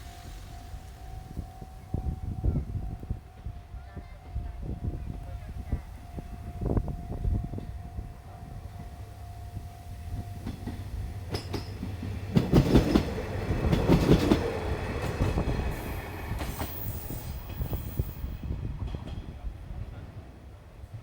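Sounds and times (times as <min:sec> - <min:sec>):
low train rumble: 0:00.0 - 0:21.0
train wheels clacking: 0:08.5 - 0:19.4.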